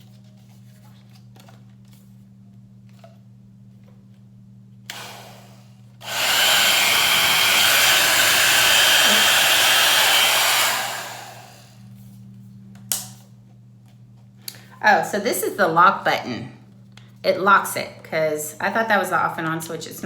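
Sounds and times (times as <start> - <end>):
hair dryer blowing with whine: 4.9 - 11.9.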